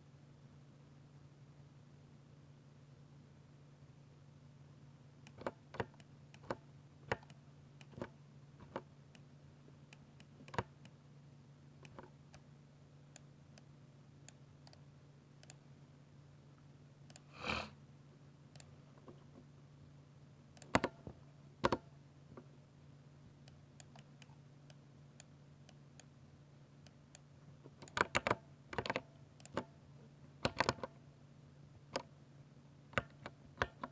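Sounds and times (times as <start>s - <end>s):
mechanical keyboard keystrokes: 27.8s - 29.7s, 30.4s - 31.0s, 33.0s - 33.9s.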